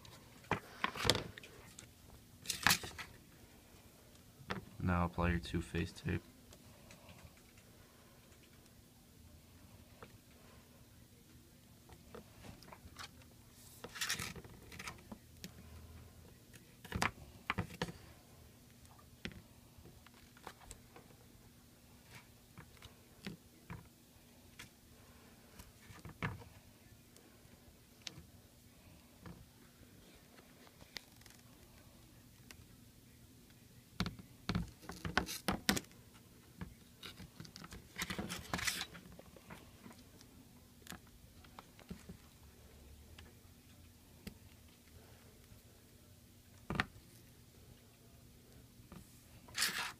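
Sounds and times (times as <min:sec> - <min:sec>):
tape rustling and scraping: 0:12.4 - 0:15.2, 0:30.0 - 0:31.8, 0:34.5 - 0:36.0, 0:37.0 - 0:42.2, 0:48.9 - 0:49.9.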